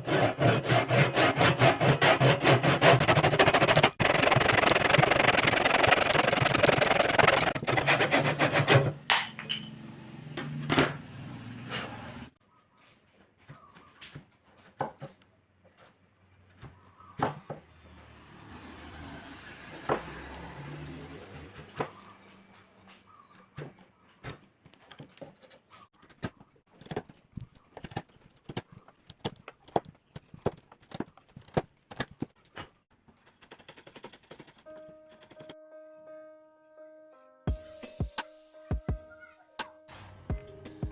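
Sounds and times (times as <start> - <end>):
rapid scraping on wood: 0.0 - 9.0, 23.2 - 34.7.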